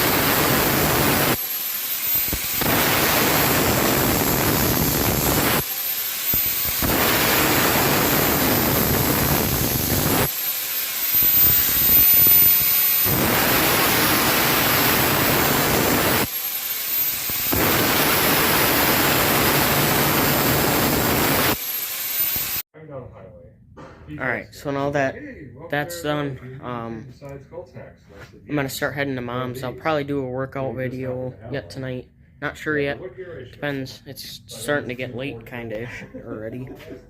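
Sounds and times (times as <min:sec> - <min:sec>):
angle grinder grinding steel: 0:00.0 - 0:22.6.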